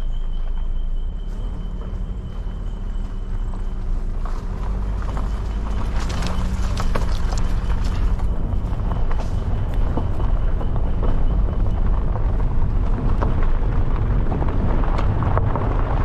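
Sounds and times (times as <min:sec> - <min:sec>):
knocks and rattles: 0:00.0 - 0:16.0
vehicle engine rumbling: 0:00.0 - 0:16.0.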